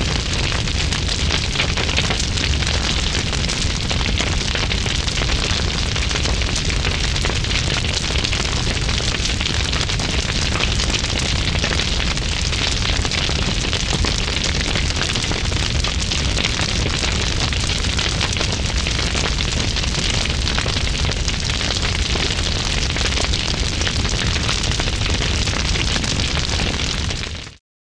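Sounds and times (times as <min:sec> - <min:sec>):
large fire crackling: 0:00.0 - 0:27.6
low fire rumble: 0:00.0 - 0:27.6.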